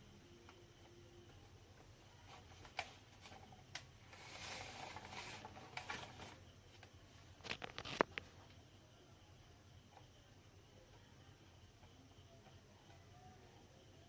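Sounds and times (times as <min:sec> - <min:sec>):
soft rustle: 0:02.2 - 0:08.4.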